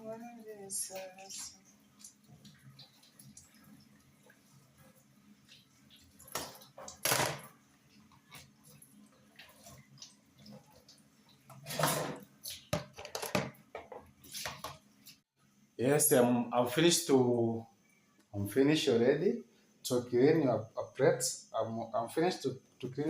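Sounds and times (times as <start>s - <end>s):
water splashing and sloshing: 0.4s - 15.3s.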